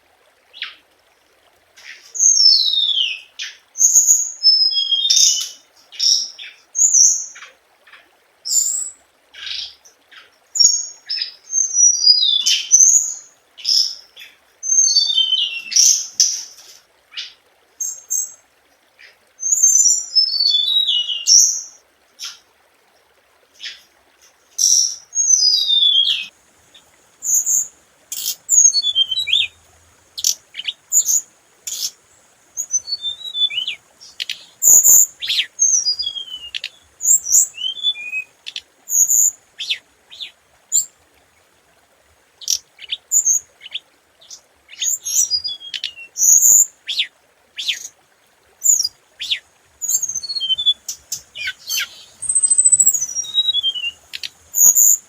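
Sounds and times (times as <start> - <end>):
songbird chirping and whistling: 2.2 - 5.6, 14.7 - 16.0, 19.4 - 22.4, 24.6 - 26.3, 27.2 - 32.0, 32.6 - 40.9, 42.4 - 47.9, 48.7 - 55.0.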